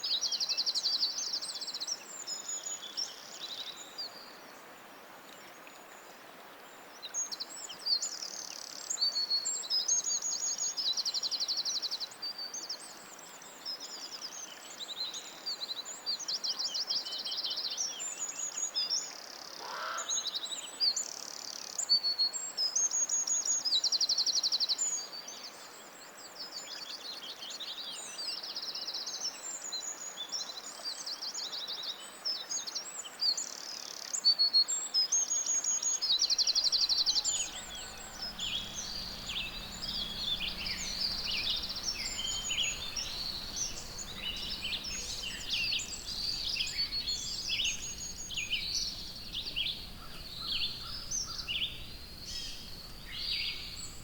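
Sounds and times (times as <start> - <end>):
songbirds singing: 36.4 - 54.0
low steady hum: 36.7 - 54.0.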